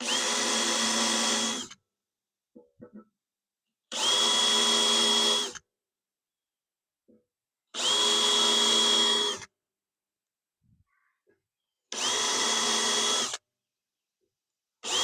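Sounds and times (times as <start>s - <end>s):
electric drill whine: 0.0s - 1.8s, 3.9s - 5.6s, 7.8s - 9.5s, 11.9s - 13.4s.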